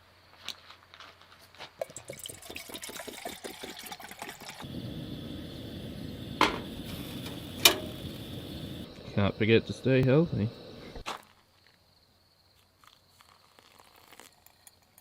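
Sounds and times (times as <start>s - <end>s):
liquid dripping: 1.8s - 4.6s
liquid pouring: 1.8s - 4.8s, 12.8s - 15.0s.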